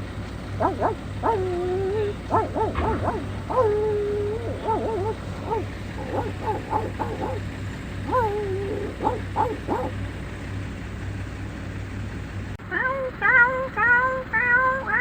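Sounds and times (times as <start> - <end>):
dog pitched cries: 0.6 - 7.5, 8.1 - 10.0
dog whining: 0.6 - 7.5, 8.1 - 10.0
dog yipping: 0.6 - 7.5, 8.1 - 10.0.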